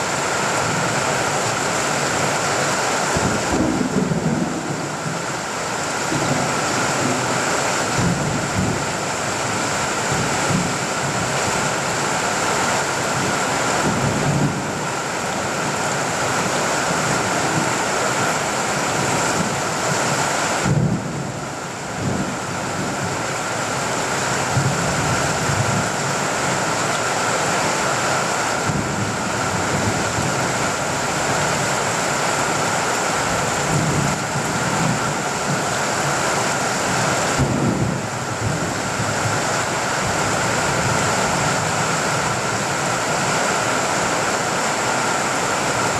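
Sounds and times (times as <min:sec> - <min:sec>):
heavy rain on a tin roof: 0:00.0 - 0:45.9
distant thunder rumbling: 0:03.1 - 0:11.3, 0:37.3 - 0:39.2.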